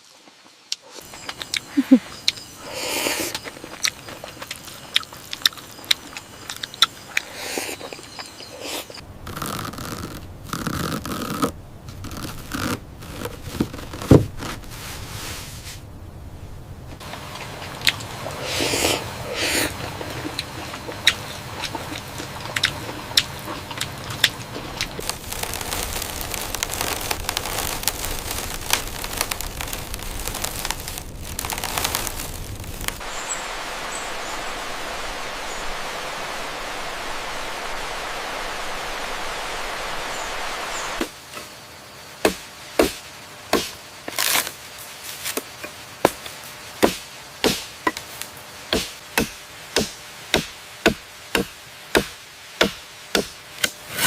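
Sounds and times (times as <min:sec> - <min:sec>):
crackling hiss: 0:00.0 - 0:54.0
tool strikes on bamboo: 0:42.2 - 0:44.2, 0:45.4 - 0:48.1, 0:48.7 - 0:54.0.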